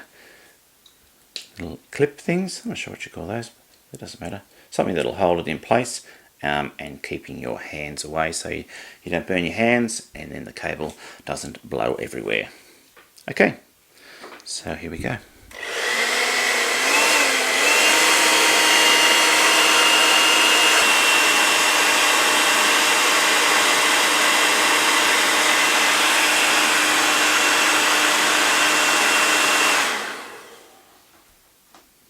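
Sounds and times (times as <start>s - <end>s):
hair dryer blowing: 15.1s - 31.1s.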